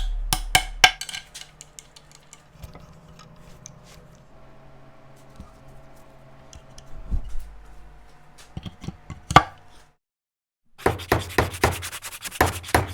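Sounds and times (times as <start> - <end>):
sanding strokes on wood: 10.8 - 12.9.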